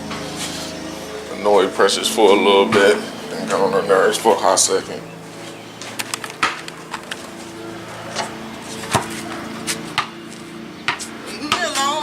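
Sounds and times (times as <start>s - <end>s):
faint low tones: 0.8s - 5.4s.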